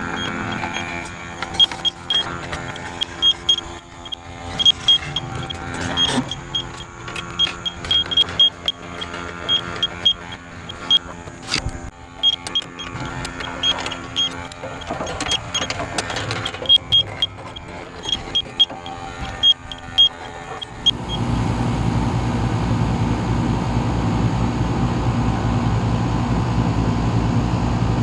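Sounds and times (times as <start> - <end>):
leak detector beeping: 0.0 - 21.3
mechanical hum: 0.0 - 28.0.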